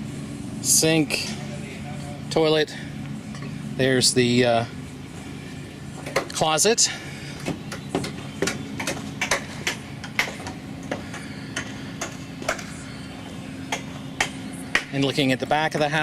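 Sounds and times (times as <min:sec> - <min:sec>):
steady low hum: 0:00.0 - 0:16.0
sharp knocks of framing work: 0:07.4 - 0:12.8, 0:13.7 - 0:15.0.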